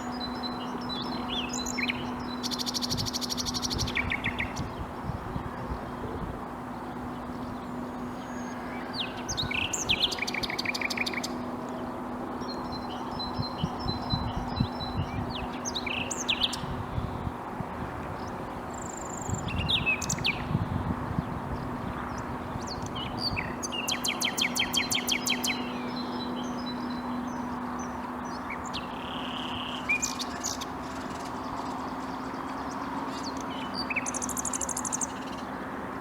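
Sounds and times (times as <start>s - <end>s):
nightingale singing: 0.0s - 4.7s, 7.4s - 11.5s, 12.4s - 16.7s, 22.7s - 31.4s
steady low hum: 0.0s - 36.0s.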